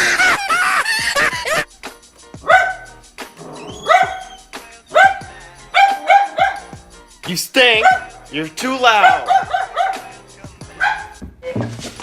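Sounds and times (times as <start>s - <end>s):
dog barking: 2.4s - 6.8s, 7.8s - 8.2s, 9.0s - 11.6s.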